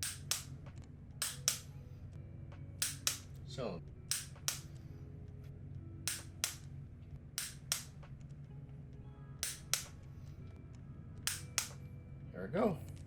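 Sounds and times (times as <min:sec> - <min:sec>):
torque wrench double clicks: 0:00.0 - 0:00.5, 0:01.2 - 0:01.7, 0:02.8 - 0:03.2, 0:04.1 - 0:04.7, 0:06.1 - 0:06.6, 0:07.4 - 0:07.9, 0:09.4 - 0:09.9, 0:11.3 - 0:11.8.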